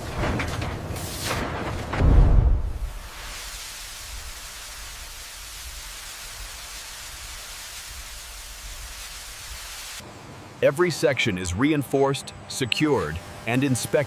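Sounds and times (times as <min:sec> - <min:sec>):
steady hiss: 0:02.7 - 0:11.1.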